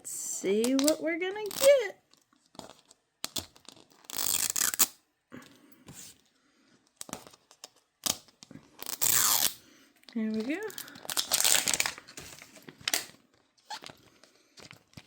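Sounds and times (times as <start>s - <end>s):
plastic crinkling and clicks: 0.6s - 4.1s, 10.0s - 15.0s
plastic shrink wrap ripping: 0.6s - 5.0s, 7.9s - 9.6s, 10.2s - 15.0s.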